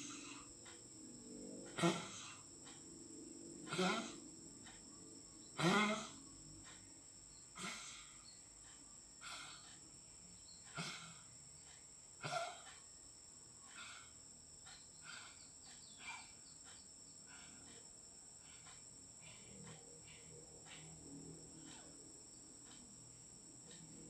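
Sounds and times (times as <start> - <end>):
insects chirring: 0.0 - 24.0
animal cough-like barks: 1.7 - 2.4, 3.7 - 4.2, 5.6 - 6.2, 7.6 - 8.1, 10.7 - 11.3, 12.2 - 12.8, 16.0 - 16.3.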